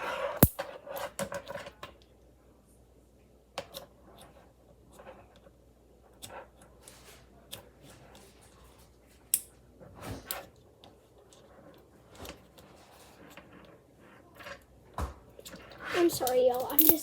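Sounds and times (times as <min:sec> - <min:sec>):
fidget toy clicks and rustles: 0:15.4 - 0:17.0.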